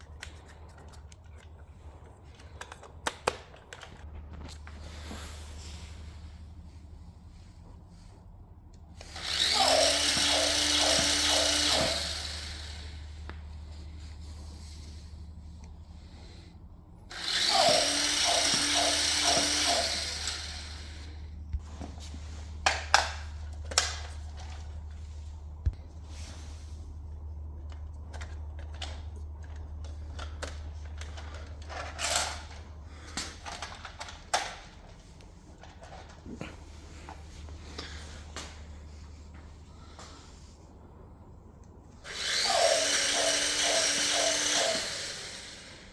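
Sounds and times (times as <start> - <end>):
steady low hum: 0.0 - 45.9
toy robot gear motor whirring: 9.0 - 13.1, 17.1 - 21.2, 30.2 - 32.6, 42.0 - 45.9.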